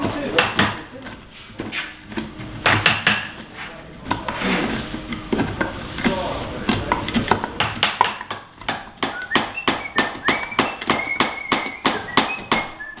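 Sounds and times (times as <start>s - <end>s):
hammer blows on wood: 8.7s - 13.0s.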